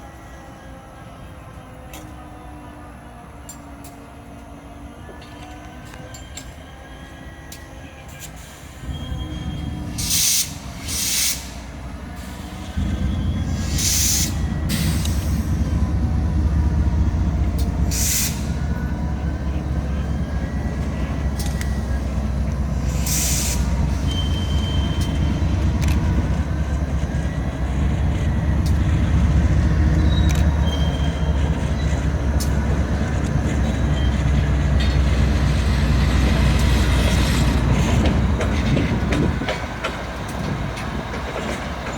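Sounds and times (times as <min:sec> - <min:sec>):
diesel locomotives rumbling: 0:00.0 - 0:41.9
faint high squeals: 0:05.1 - 0:35.0
sharp air hisses: 0:09.9 - 0:12.8, 0:13.5 - 0:15.5, 0:17.9 - 0:18.6, 0:22.8 - 0:24.3.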